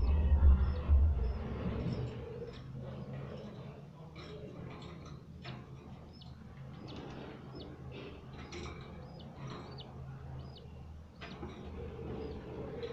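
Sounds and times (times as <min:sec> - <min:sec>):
budgerigars chirping: 0:00.0 - 0:02.2, 0:06.1 - 0:12.9
faint low hum: 0:00.0 - 0:12.9.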